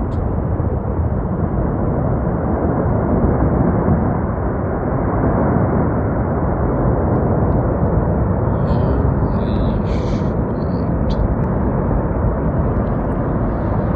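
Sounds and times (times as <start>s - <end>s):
wind buffeting microphone: 0.0s - 13.9s.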